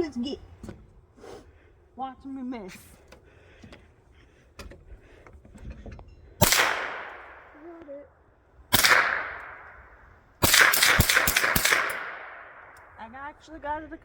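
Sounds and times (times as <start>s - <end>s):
rifle shots echoing: 6.4s - 7.7s, 8.7s - 13.0s.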